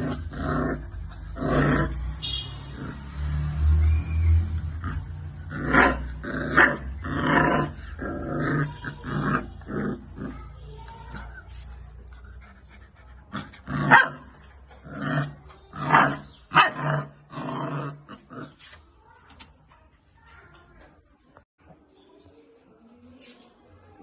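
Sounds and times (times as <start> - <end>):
puppy growling and yipping: 0.0 - 2.1, 4.7 - 10.4.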